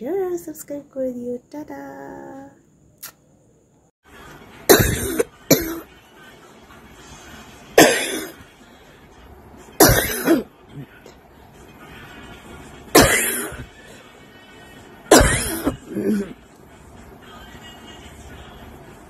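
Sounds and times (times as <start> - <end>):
woman coughing: 4.7 - 5.9, 7.8 - 8.4, 9.8 - 10.5, 12.9 - 13.7, 15.1 - 16.4.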